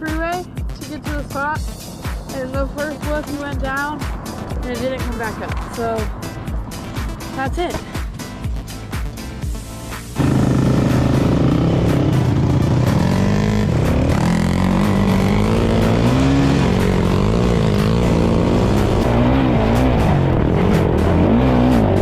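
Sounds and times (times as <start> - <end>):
quad bike engine revving: 10.0 - 22.0.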